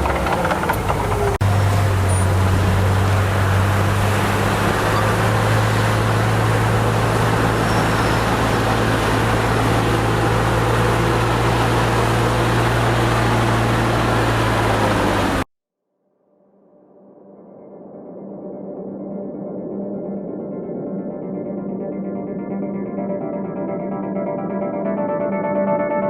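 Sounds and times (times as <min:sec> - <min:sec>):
bulldozer diesel engine running: 0:00.0 - 0:15.5.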